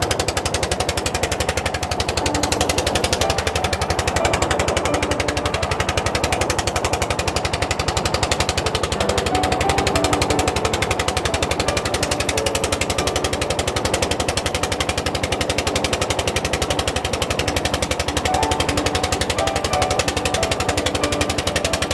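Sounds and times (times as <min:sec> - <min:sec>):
motor boat engine chugging: 0:00.0 - 0:21.9.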